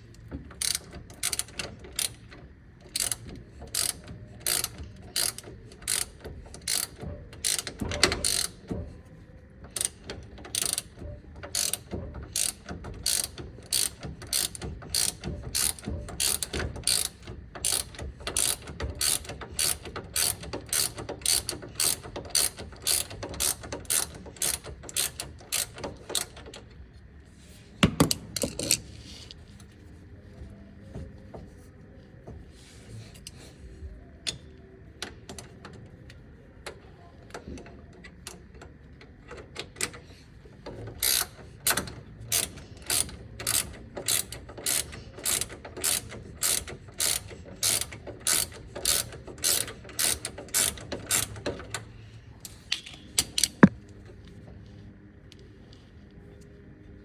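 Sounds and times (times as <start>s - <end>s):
ratchet wrench clicking: 0.2s - 8.7s, 9.8s - 26.6s, 41.0s - 51.4s.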